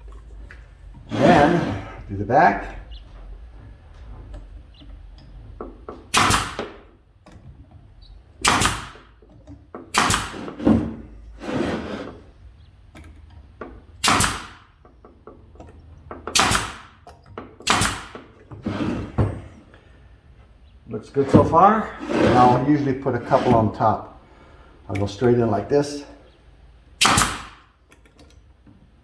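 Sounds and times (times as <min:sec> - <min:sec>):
hammer striking nails into wood: 0:05.6 - 0:06.9, 0:08.4 - 0:11.0, 0:14.0 - 0:14.8, 0:16.1 - 0:18.4, 0:27.0 - 0:27.7.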